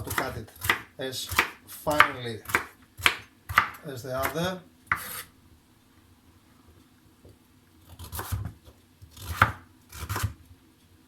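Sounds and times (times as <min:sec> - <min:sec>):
knife cutting carrots on board: 0:00.0 - 0:05.3, 0:07.9 - 0:10.4.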